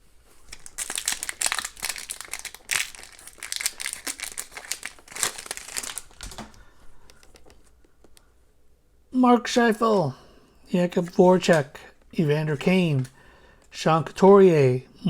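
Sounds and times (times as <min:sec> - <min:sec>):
card pack wrapper tearing: 0:00.5 - 0:06.6.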